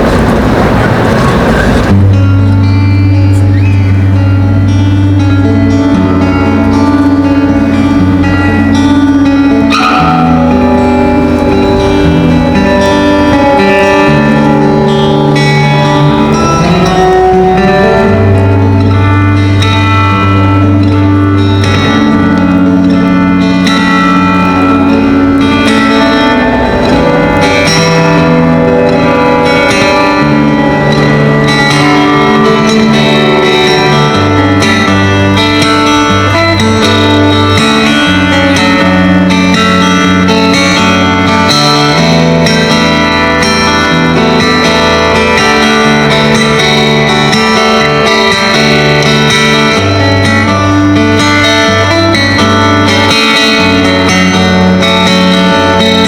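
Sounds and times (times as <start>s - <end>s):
fingerstyle guitar: 0.0s - 56.0s.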